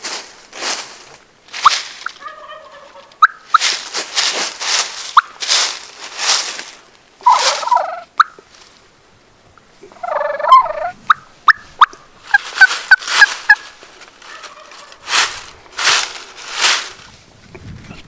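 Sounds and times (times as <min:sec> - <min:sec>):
turkey gobbling: 0:01.6 - 0:03.7, 0:07.2 - 0:08.4, 0:09.8 - 0:15.2.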